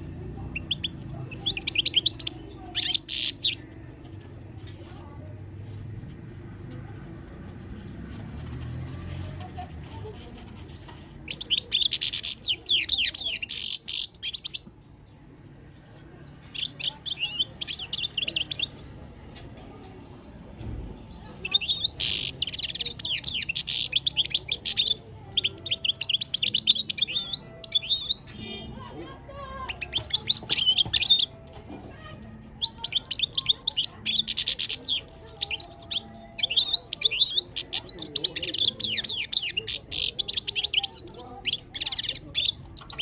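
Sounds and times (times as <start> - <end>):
finch twittering and trilling: 0.5 - 3.6, 11.3 - 14.7, 16.5 - 18.9, 21.4 - 28.3, 29.6 - 31.3, 32.6 - 43.0.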